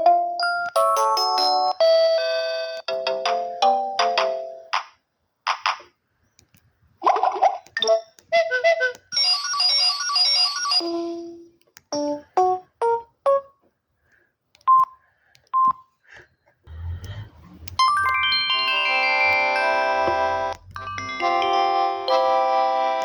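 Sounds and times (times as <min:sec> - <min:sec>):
polyphonic ringtone melody: 0:00.0 - 0:04.6, 0:09.1 - 0:11.2, 0:17.7 - 0:23.0.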